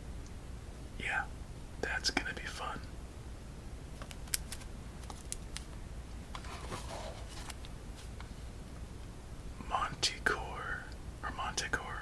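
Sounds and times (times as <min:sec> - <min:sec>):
soft rustle: 0:06.3 - 0:08.6.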